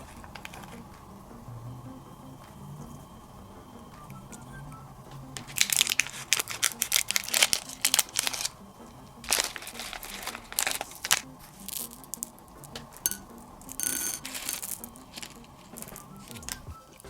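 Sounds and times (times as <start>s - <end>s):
soft background music: 0.0s - 17.0s
sharp crackling and crunching: 5.0s - 17.0s.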